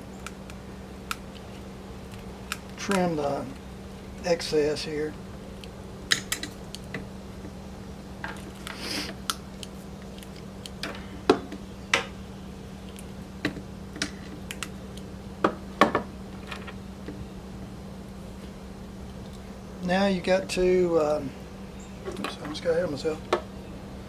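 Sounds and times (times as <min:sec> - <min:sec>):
cutters snipping wires: 0:00.0 - 0:03.7.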